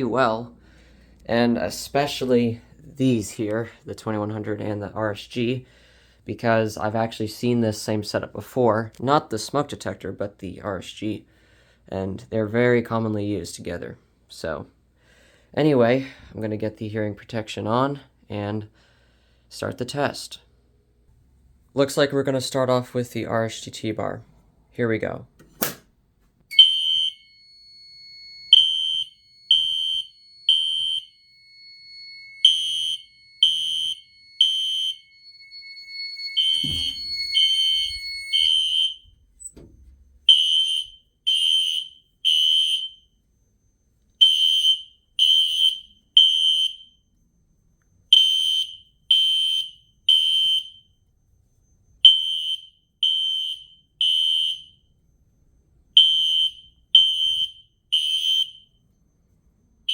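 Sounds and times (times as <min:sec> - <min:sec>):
alarm horn beeps: 0:32.2 - 0:39.1
dull thumps: 0:36.5 - 0:38.1.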